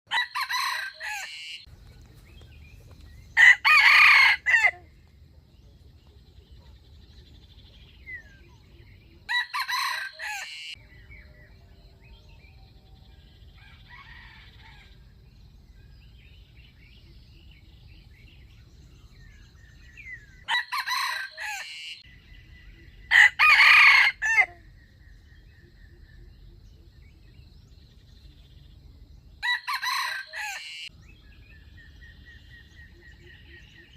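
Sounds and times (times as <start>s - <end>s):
rooster crowing: 0.1s - 1.5s, 3.4s - 4.9s, 9.3s - 10.8s, 13.5s - 15.0s, 20.5s - 21.8s, 23.1s - 24.6s, 29.4s - 30.8s.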